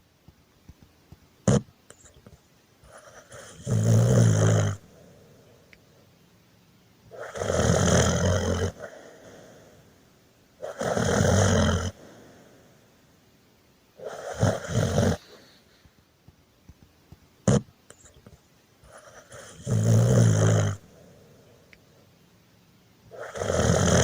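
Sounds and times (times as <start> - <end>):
loud snoring: 2.9 - 5.1, 7.1 - 9.7, 10.6 - 12.2, 14.0 - 15.5, 18.9 - 21.1, 23.1 - 24.0.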